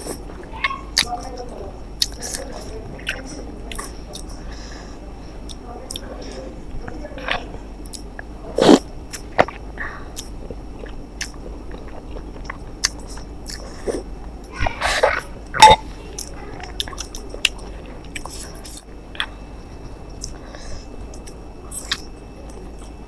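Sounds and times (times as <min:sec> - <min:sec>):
person chewing food: 0:02.0 - 0:04.6, 0:06.8 - 0:14.1, 0:14.7 - 0:23.0.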